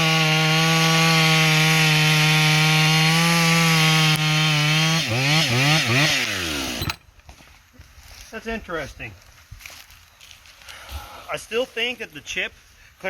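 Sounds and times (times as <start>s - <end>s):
chainsaw revving: 0.0s - 7.0s.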